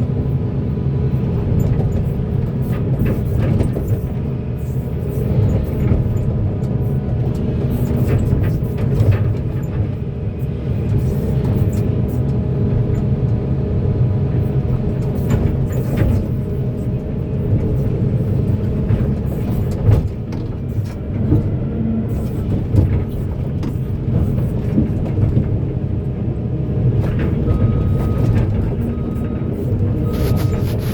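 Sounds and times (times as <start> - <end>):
excavator diesel engine running: 0.0 - 30.9
knocks and clunks: 18.6 - 21.6
short high beep: 30.0 - 30.9.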